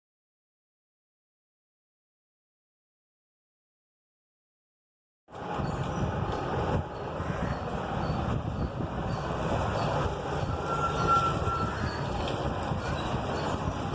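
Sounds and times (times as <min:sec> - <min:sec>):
high whistle: 0:10.5 - 0:11.8.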